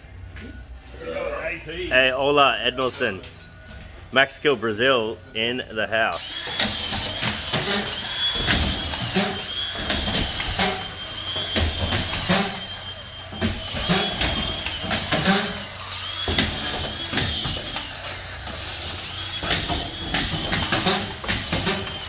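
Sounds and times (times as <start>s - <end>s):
screw gun whining: 6.2s - 22.0s.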